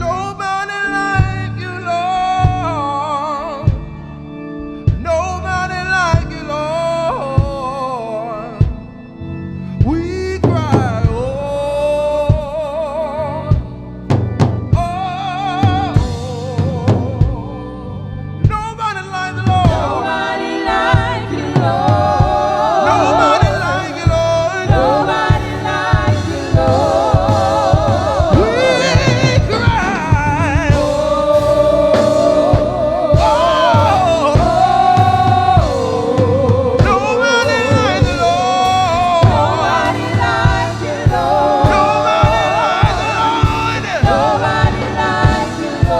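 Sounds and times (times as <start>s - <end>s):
band with steady drum beat: 2.4s - 2.8s, 6.1s - 6.5s, 7.4s - 7.8s, 9.8s - 11.4s, 15.6s - 17.5s, 18.4s - 18.8s, 19.4s - 45.9s
choir singing: 10.9s - 45.9s
singer with strong vibrato: 14.8s - 45.9s.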